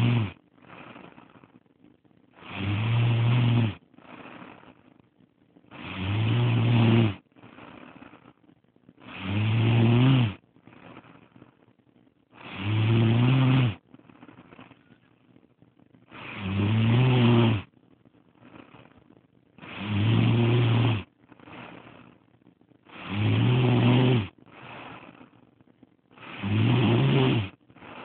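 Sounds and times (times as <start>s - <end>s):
woman snoring: 0.0s - 1.6s, 2.3s - 5.0s, 5.7s - 8.4s, 9.0s - 11.7s, 12.3s - 15.1s, 16.1s - 17.7s, 18.3s - 28.0s
faint breathing: 0.0s - 28.0s.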